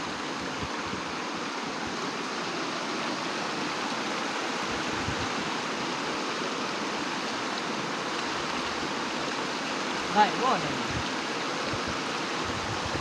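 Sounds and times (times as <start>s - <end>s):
floodwater rushing and splashing: 0.0s - 13.0s.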